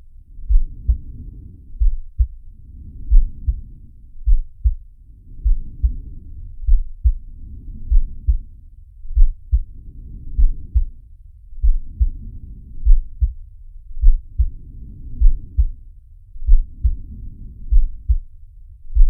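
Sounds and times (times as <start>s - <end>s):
slow heartbeat thumps: 0.4s - 1.2s, 1.8s - 2.5s, 3.1s - 7.3s, 7.9s - 8.5s, 9.1s - 9.8s, 10.4s - 11.0s, 11.6s - 15.8s, 16.4s - 19.0s.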